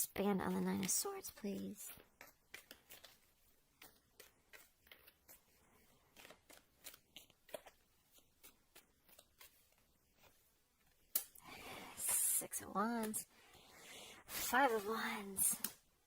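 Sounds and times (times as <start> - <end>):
card deck being shuffled: 0.5 - 11.4.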